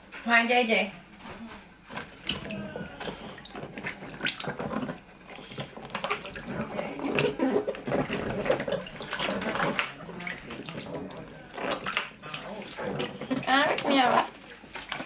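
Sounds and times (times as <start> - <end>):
tap water running into sink: 2.0 - 15.0.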